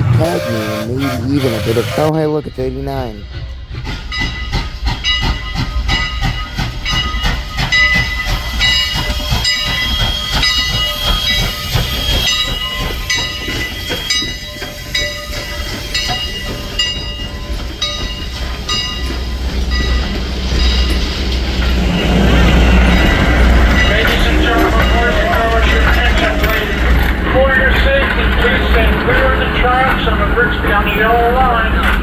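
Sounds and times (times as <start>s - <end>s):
locomotive bell ringing: 0.0s - 32.0s
steam hiss: 3.4s - 17.0s.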